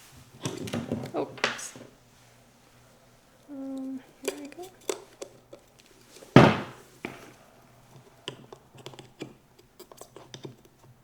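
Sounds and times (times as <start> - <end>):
metal tools clicking and tapping: 4.2 - 5.9.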